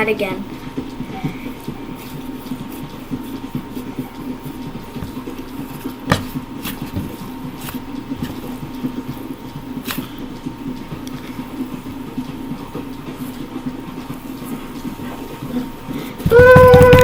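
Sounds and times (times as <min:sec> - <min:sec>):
steady background hum: 0:00.0 - 0:17.0.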